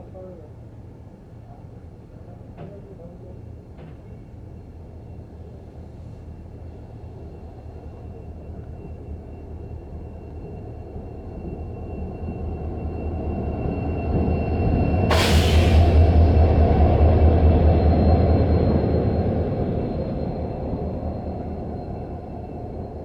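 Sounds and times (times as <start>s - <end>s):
diesel locomotive engine rumble: 0.0s - 23.0s
sharp hiss of air: 15.1s - 16.1s.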